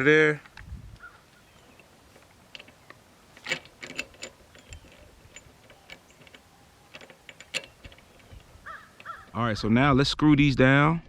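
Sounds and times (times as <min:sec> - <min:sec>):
metal parts clicking and clinking: 0:01.6 - 0:09.4.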